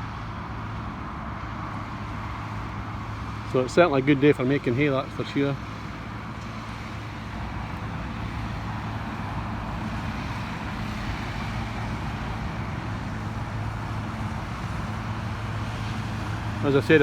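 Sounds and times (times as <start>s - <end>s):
engine running steadily: 0.0s - 17.0s.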